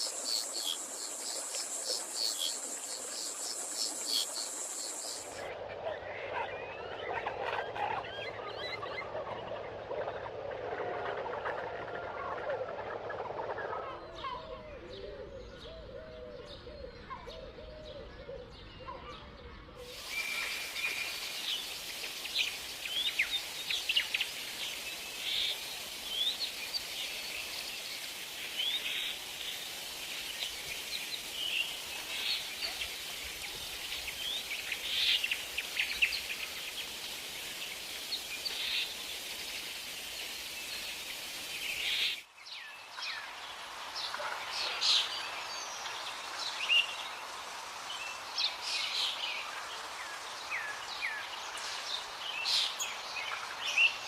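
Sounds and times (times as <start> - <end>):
steady hiss: 0.0 - 5.5, 19.8 - 54.0.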